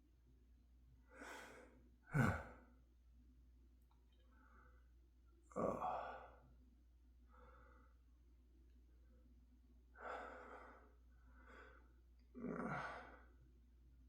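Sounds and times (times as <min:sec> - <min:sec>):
man breathing heavily and gasping: 0:01.2 - 0:02.6.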